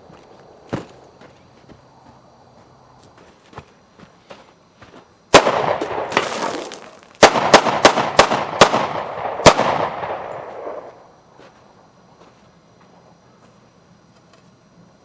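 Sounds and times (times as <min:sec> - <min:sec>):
pistol shots with echo: 0:05.3 - 0:06.6, 0:07.2 - 0:11.0.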